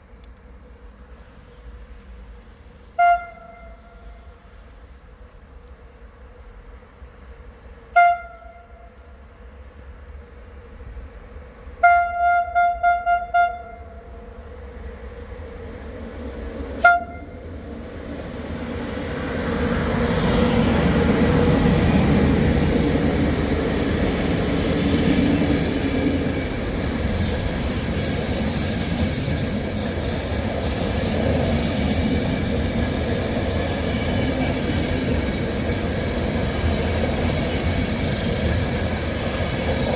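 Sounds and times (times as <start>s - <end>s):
train rumbling past: 0.0s - 39.9s
train horn toots: 2.9s - 4.6s, 7.9s - 9.0s, 11.8s - 14.3s, 16.8s - 17.4s.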